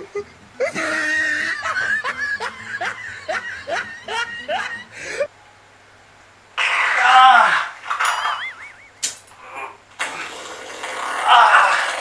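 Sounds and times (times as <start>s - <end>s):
person snickering: 0.0s - 5.3s, 8.1s - 9.8s.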